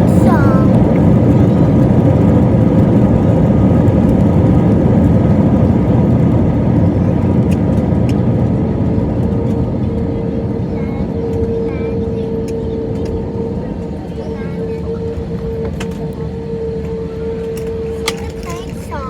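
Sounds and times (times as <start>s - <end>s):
steady whine: 0.0s - 5.8s
jet engine and air rush in cabin: 0.0s - 19.0s.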